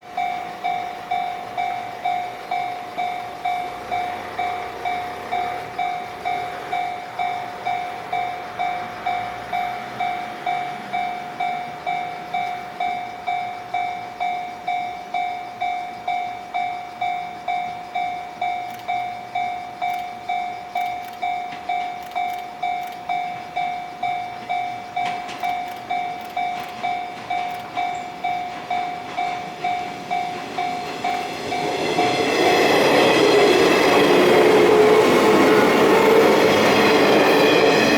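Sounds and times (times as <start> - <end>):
electric train passing: 0.0 - 37.9
wheel clicks over rail joints: 18.6 - 31.3.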